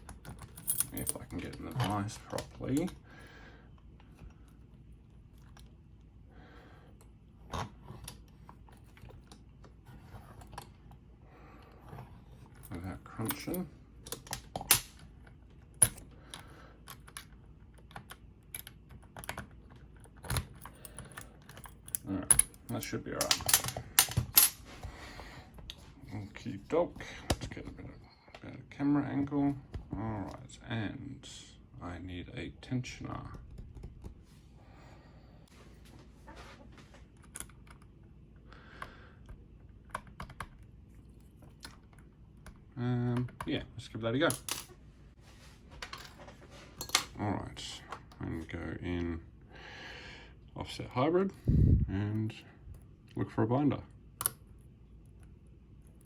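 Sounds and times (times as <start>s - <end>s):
lockpicking tools clicking and rattling: 0.0s - 3.0s, 12.4s - 24.7s, 37.1s - 38.0s, 44.2s - 44.8s.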